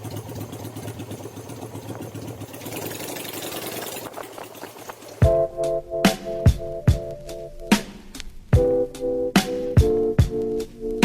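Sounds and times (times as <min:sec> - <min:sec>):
motorcycle engine idling: 0:00.0 - 0:07.1
electronic music with heavy bass: 0:05.2 - 0:07.9, 0:08.6 - 0:11.0.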